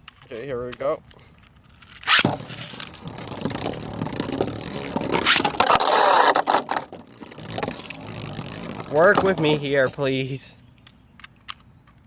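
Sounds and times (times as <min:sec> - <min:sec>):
spinning tops scraping and rattling: 0:01.7 - 0:10.0
spinning top launcher zip: 0:02.0 - 0:06.6.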